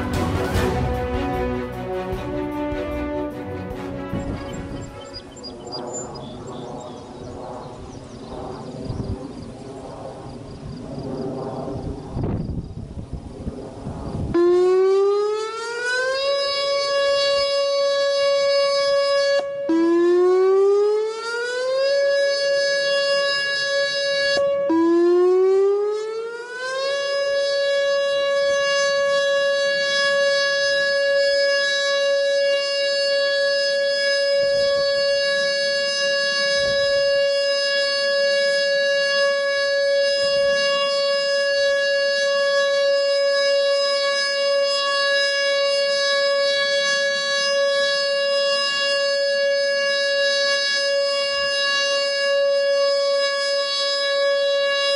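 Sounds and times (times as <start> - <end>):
electronic warning siren: 0.0 - 54.9.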